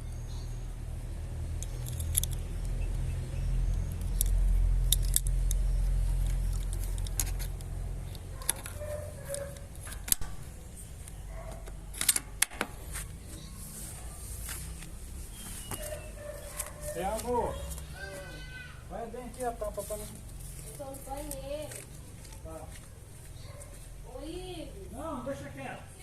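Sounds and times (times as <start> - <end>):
small clicks and metallic ticks: 1.6 - 10.3.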